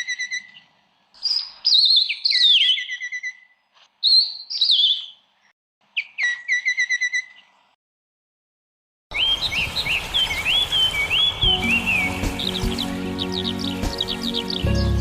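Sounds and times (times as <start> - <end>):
bird rising and falling calls: 0.0 - 5.2, 6.0 - 7.5, 9.1 - 15.0
songbird whistling: 9.2 - 15.0.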